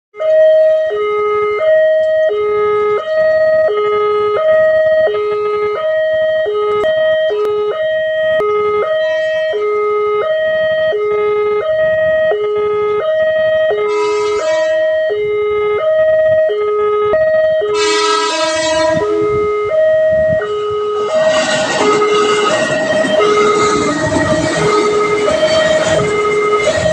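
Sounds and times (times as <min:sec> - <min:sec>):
two-tone level-crossing siren: 0:00.2 - 0:26.9
horn blast: 0:08.9 - 0:09.6, 0:13.8 - 0:15.0, 0:17.7 - 0:19.8, 0:20.4 - 0:26.9.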